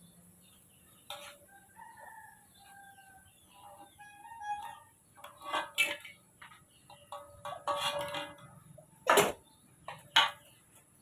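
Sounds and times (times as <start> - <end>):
metal cookware clinking: 4.6 - 10.5.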